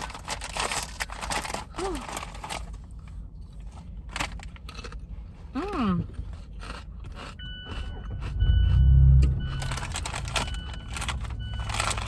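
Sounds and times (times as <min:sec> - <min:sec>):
chip bag crinkling: 0:00.0 - 0:02.9, 0:09.6 - 0:12.0
chips crunching: 0:00.0 - 0:05.1, 0:06.1 - 0:12.0
low rumble: 0:07.4 - 0:12.0.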